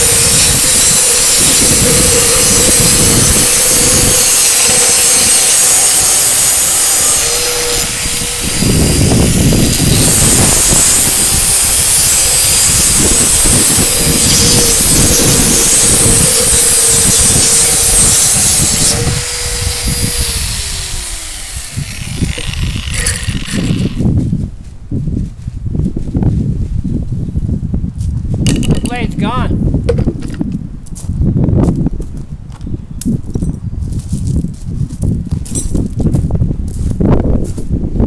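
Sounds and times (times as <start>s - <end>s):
angle grinder cutting stone: 0.0s - 24.0s
grinder motor winding down: 0.0s - 24.0s.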